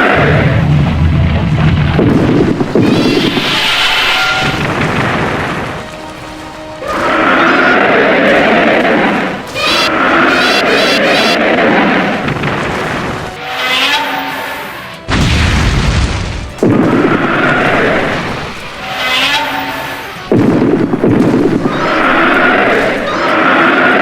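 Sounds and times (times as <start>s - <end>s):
heavy boom: 0.2s - 5.9s, 15.1s - 18.6s, 20.3s - 23.0s
sudden loud hits: 0.2s - 7.3s, 15.1s - 18.8s, 20.3s - 23.2s
pitched monster cries: 2.7s - 4.7s, 6.8s - 12.2s, 13.4s - 15.0s, 16.8s - 20.2s, 21.6s - 24.0s.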